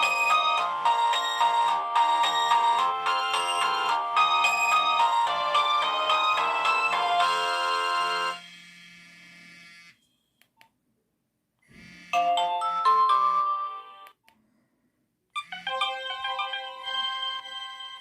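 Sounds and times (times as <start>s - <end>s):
phone melodic tones: 0.0s - 8.4s, 12.2s - 14.1s, 15.4s - 18.0s.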